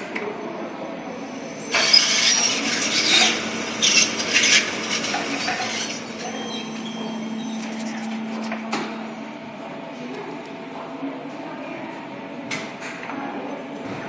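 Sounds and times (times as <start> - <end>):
elevator drive unit rasping: 1.5 - 8.5.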